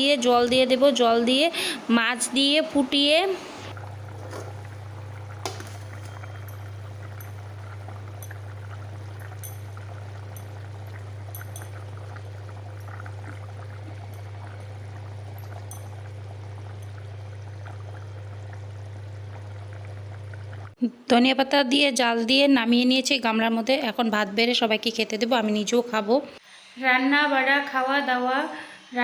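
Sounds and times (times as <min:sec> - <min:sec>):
steady low hum: 0:00.0 - 0:20.8
curry bubbling in a pan: 0:03.7 - 0:20.8.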